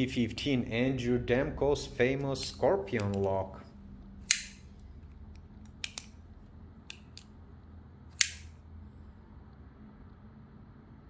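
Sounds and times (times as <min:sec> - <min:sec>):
folding knife blade snapping: 0:04.2 - 0:04.6, 0:05.8 - 0:06.2, 0:08.1 - 0:08.6
folding knife lock clicks: 0:05.6 - 0:06.2, 0:08.1 - 0:08.5.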